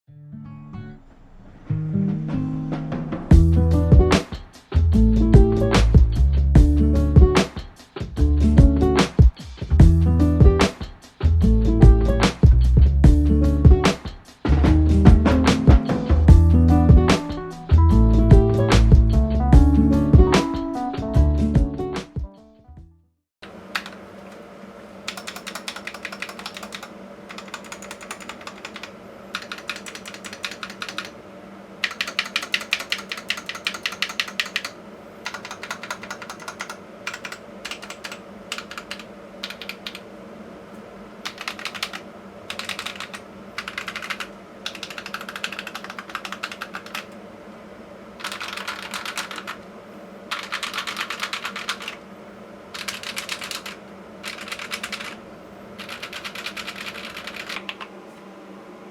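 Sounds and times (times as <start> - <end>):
faint steady hum: 23.4 - 58.9
mechanical keyboard typing: 23.7 - 24.4, 25.0 - 31.2, 31.8 - 40.0, 41.2 - 47.2, 48.2 - 49.6, 50.3 - 52.0, 52.8 - 55.2, 55.8 - 57.9.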